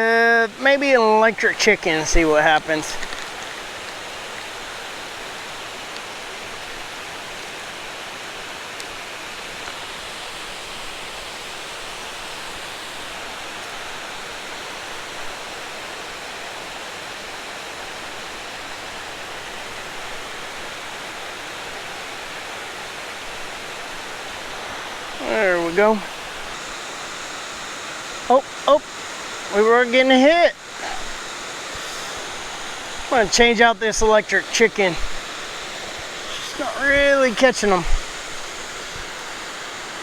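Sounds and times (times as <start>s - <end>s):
river water rushing over spillway: 0.0s - 40.0s.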